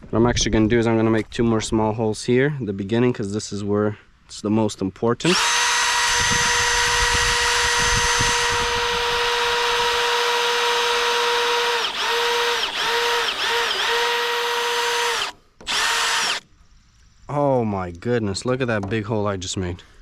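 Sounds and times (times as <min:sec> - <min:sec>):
power drill whine: 0:05.2 - 0:16.4.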